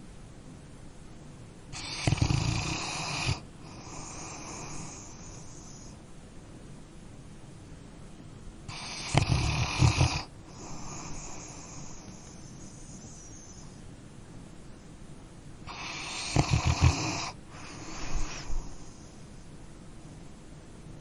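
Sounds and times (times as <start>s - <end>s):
dog snoring: 1.7s - 5.9s, 8.7s - 13.8s, 15.6s - 19.2s.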